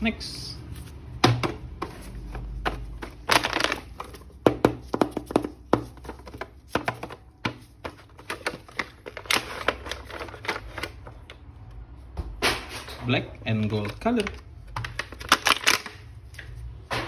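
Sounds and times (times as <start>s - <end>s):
plastic packaging clicks and rustles: 1.5s - 11.4s, 13.1s - 16.7s.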